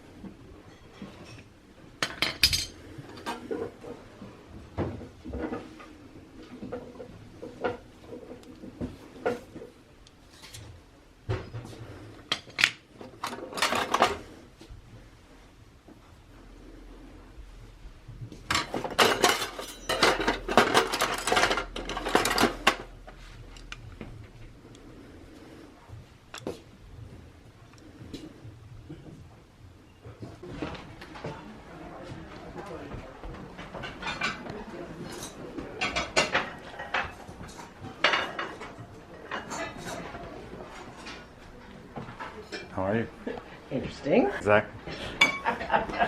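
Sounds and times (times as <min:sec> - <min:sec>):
metal tools clinking: 0:02.0 - 0:02.8, 0:18.6 - 0:22.9.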